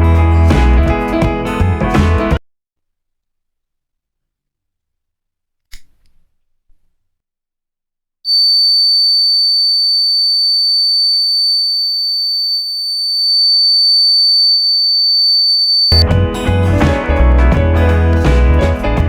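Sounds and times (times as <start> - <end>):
music: 0.0 - 2.4, 16.0 - 19.0
high-pitched electronic alarm tone: 8.3 - 16.0.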